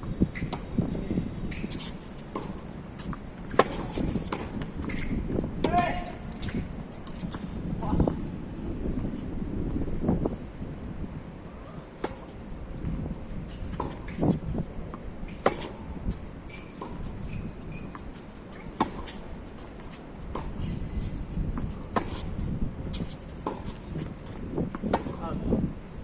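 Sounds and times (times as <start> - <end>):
wind on microphone: 0.0 - 18.2, 20.2 - 26.0
tennis ball struck by rackets: 1.5 - 7.4, 12.0 - 12.4, 15.3 - 15.9, 24.7 - 25.2.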